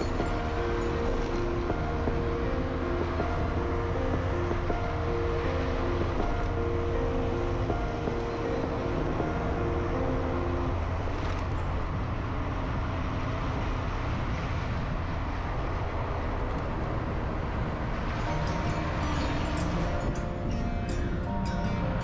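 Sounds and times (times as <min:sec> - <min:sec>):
road noise: 0:00.0 - 0:22.0.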